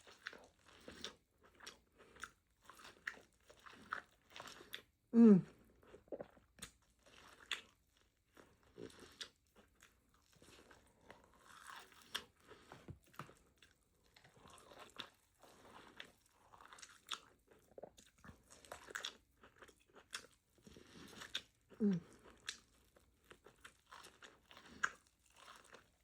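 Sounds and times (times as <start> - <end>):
crunchy chewing bites: 8.7 - 26.0.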